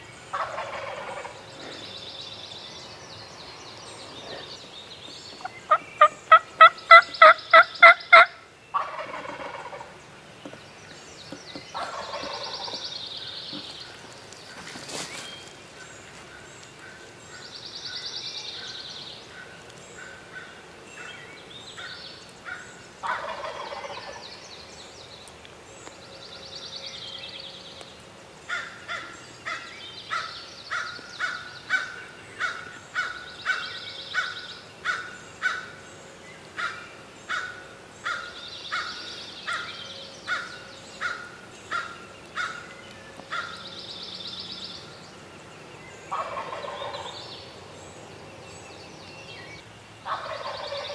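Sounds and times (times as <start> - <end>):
birdsong trills: 0.0 - 50.9
turkey gobbling: 0.3 - 1.4, 5.4 - 10.0, 11.8 - 12.7, 23.0 - 24.2, 46.1 - 47.1, 50.1 - 50.9.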